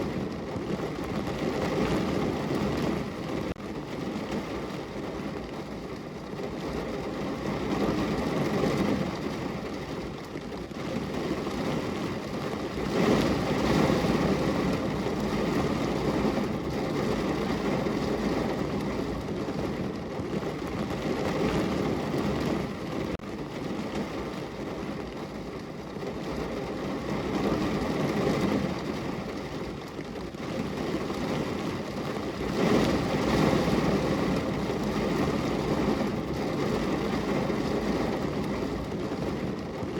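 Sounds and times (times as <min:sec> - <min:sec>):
rain on car window: 0:00.0 - 0:39.9.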